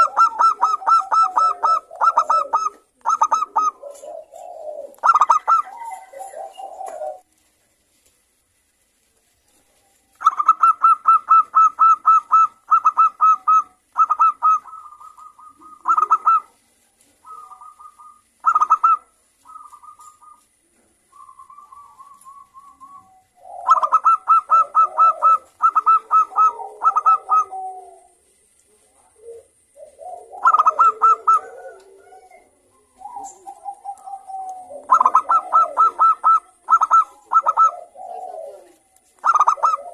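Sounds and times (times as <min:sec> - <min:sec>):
doves cooing: 0:00.0 - 0:07.4, 0:09.5 - 0:39.9
low rough bird voice: 0:24.6 - 0:39.9.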